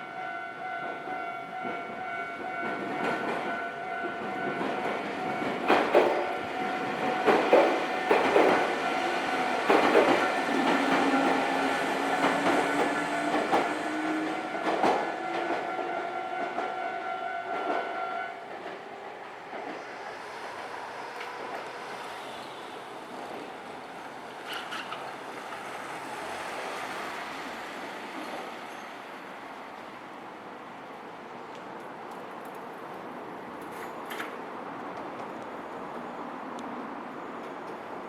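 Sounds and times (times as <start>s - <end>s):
crossing warning bell ringing: 0.0s - 18.4s
train passing: 0.0s - 38.0s.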